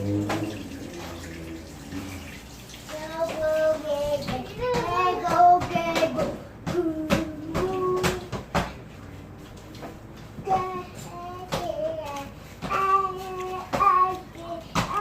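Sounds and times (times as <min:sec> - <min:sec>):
child's high voice: 0:02.9 - 0:08.3.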